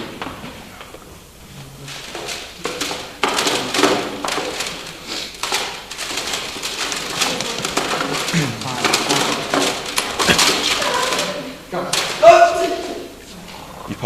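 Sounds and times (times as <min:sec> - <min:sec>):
plastic cd cases clattering: 0:01.8 - 0:12.3.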